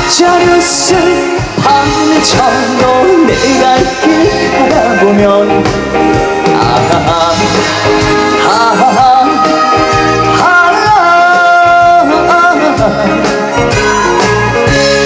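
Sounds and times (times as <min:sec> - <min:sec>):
band playing with steady beat: 0:00.0 - 0:15.0.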